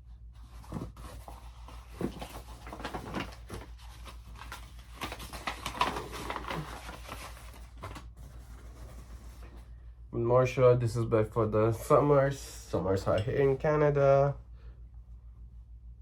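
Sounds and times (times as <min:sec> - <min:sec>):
steady low hum: 0:00.0 - 0:16.0
clothing and packaging rustling: 0:00.4 - 0:09.8.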